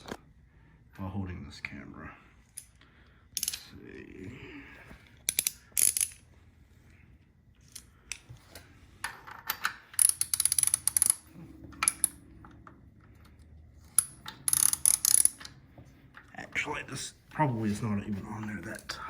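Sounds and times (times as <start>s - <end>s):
socket ratchet clicking: 3.4s - 3.6s, 5.2s - 6.2s, 10.0s - 12.1s, 13.9s - 15.6s.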